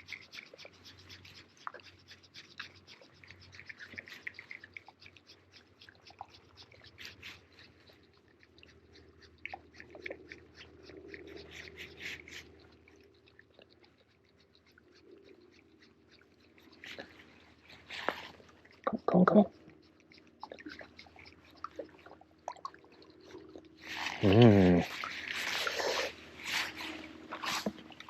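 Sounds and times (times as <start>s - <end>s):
fishing reel clicking and scratching: 0.0s - 7.8s.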